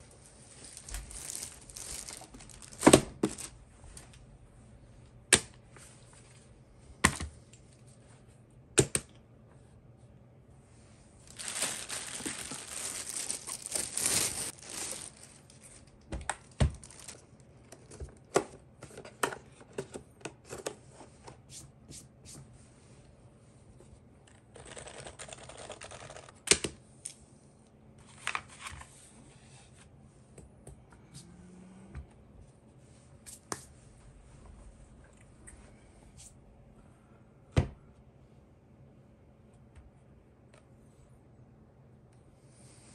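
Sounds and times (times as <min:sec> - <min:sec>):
packaging crinkling and tearing: 0:00.5 - 0:03.6, 0:11.2 - 0:17.2.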